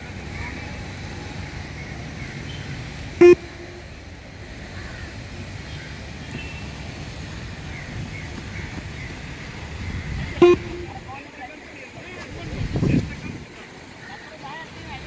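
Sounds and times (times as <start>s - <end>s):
low background noise: 0.0s - 15.0s
electronic beep: 3.2s - 3.9s, 10.4s - 11.0s.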